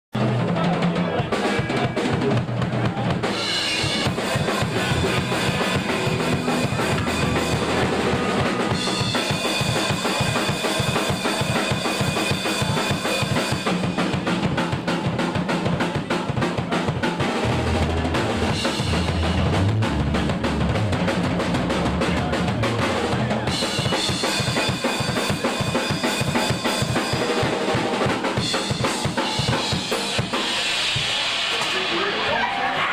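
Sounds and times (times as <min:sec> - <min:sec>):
drum kit beat: 0:00.1 - 0:32.2
moving bass line: 0:02.3 - 0:11.4, 0:17.2 - 0:23.6.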